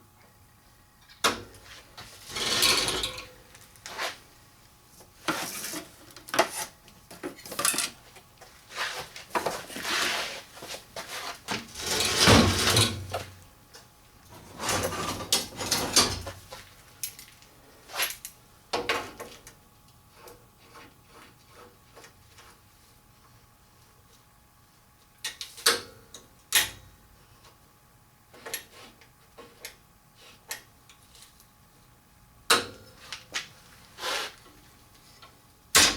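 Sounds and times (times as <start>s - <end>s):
metal parts clanking and scraping: 2.2s - 3.3s, 11.7s - 13.2s.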